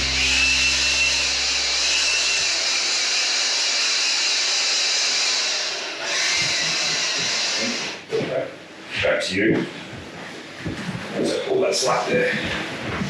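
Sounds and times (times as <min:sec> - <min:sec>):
small electric machine running: 0:00.0 - 0:08.0.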